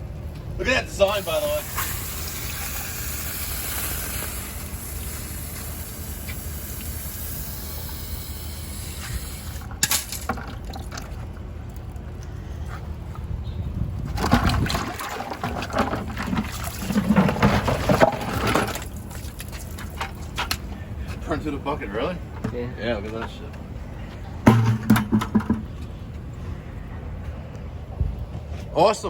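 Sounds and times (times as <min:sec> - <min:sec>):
steady low rumble: 0:00.0 - 0:15.0, 0:18.2 - 0:29.0
water splashing and bubbling: 0:14.2 - 0:20.4
sharp knock: 0:24.5 - 0:25.6.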